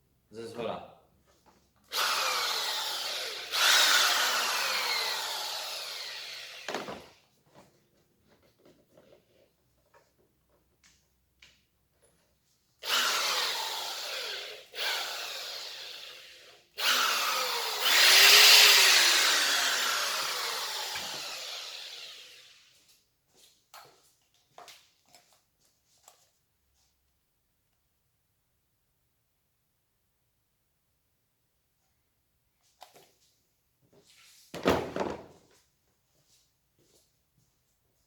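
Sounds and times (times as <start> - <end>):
hammer drill running: 1.9 - 7.1, 12.8 - 22.7.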